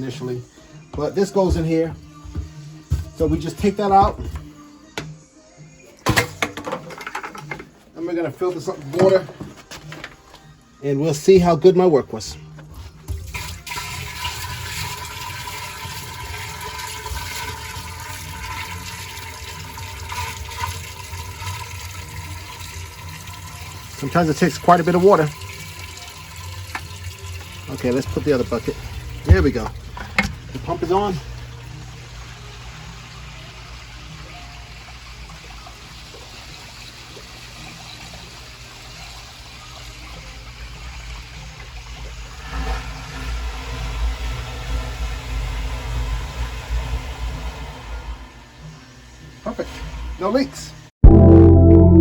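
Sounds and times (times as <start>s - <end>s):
water pouring from a bucket: 13.0s - 46.0s
sewage pump humming: 13.3s - 48.2s.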